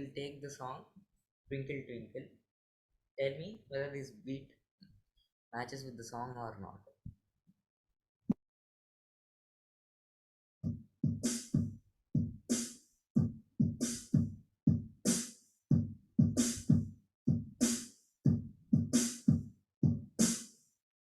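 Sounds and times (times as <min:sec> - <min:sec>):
bass drum thumps: 0:10.7 - 0:12.5, 0:13.2 - 0:14.9, 0:15.7 - 0:17.6, 0:18.3 - 0:20.2.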